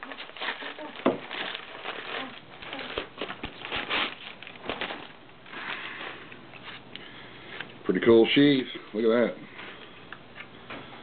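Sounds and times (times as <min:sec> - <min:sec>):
packaging rustling and crackling: 0:00.0 - 0:06.9.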